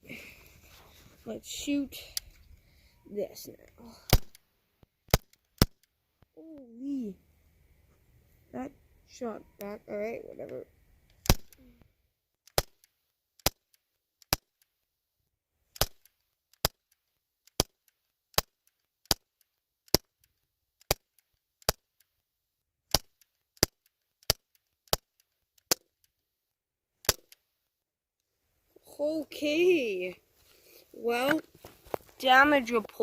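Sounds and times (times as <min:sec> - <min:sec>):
bb gun shots cracking: 0:04.1 - 0:04.4, 0:05.1 - 0:05.8, 0:11.2 - 0:11.6, 0:15.8 - 0:16.8.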